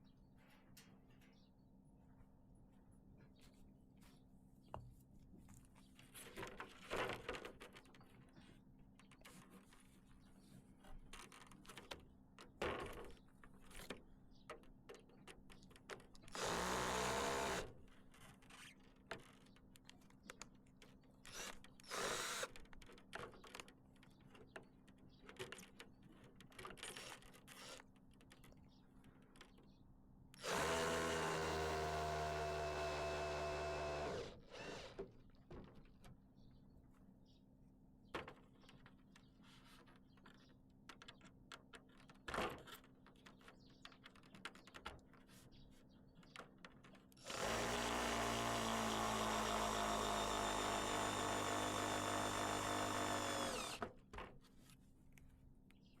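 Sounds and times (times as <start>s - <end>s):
power drill whirring: 16.3s - 17.7s, 21.3s - 22.6s, 30.4s - 35.0s, 47.2s - 53.9s.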